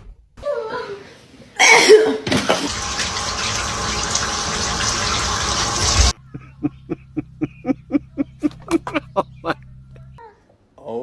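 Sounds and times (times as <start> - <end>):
running water rushing: 2.7 - 6.1.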